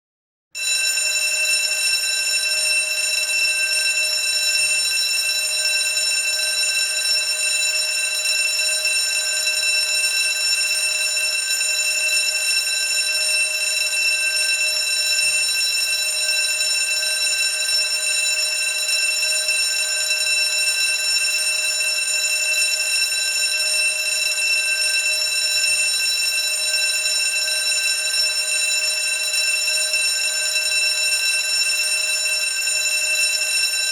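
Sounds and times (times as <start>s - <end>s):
school bell ringing: 0.6s - 2.0s.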